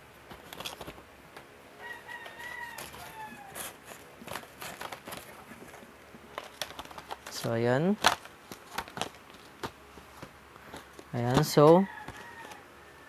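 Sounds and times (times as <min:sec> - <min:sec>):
clicks of small items handled: 0:00.3 - 0:01.5, 0:02.7 - 0:12.6
rooster crowing: 0:01.8 - 0:04.0, 0:11.5 - 0:13.0.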